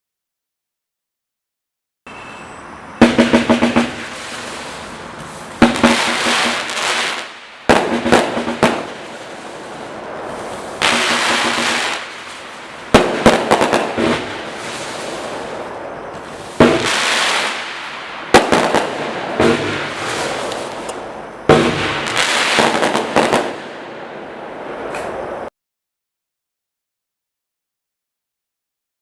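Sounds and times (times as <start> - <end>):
firework crackling and hissing: 2.8 - 25.5
firework bangs: 3.0 - 25.5.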